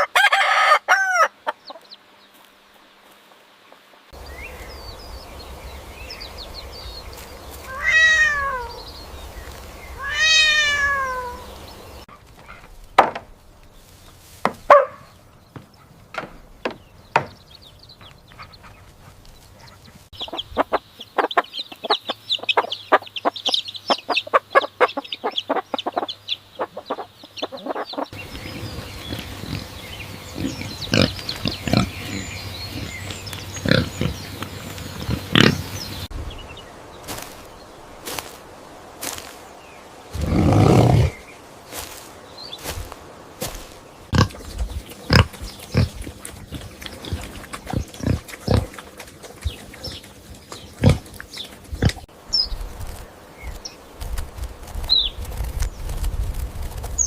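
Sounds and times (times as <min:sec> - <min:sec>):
animal calls: 0:05.2 - 0:09.2, 0:09.9 - 0:12.7, 0:18.4 - 0:36.1.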